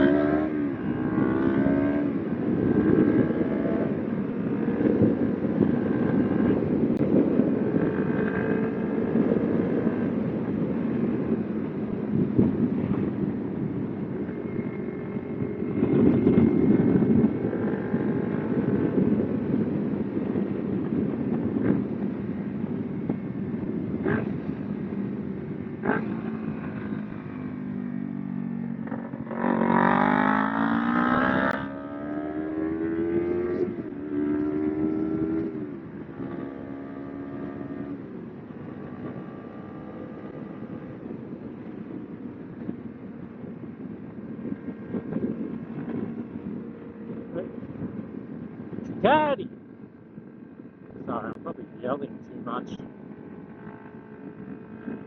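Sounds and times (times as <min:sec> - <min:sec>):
wind rushing over microphone: 0:00.0 - 0:55.0
motorcycle engine running: 0:49.6 - 0:55.0.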